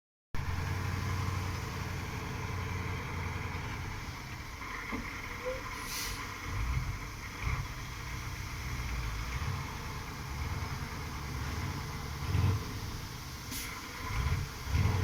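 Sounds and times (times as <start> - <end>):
diesel truck engine running: 0.4 - 15.0
brief hiss: 5.5 - 6.4, 13.4 - 14.0.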